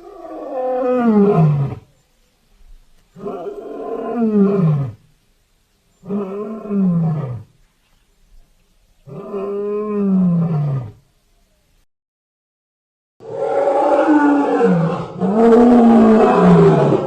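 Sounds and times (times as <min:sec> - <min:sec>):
deep monster roars: 0:13.2 - 0:17.0.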